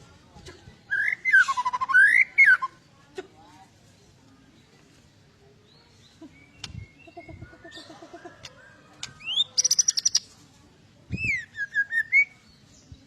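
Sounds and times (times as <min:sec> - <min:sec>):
bird singing whistled notes: 0:00.9 - 0:02.8, 0:09.2 - 0:10.3, 0:11.1 - 0:13.0.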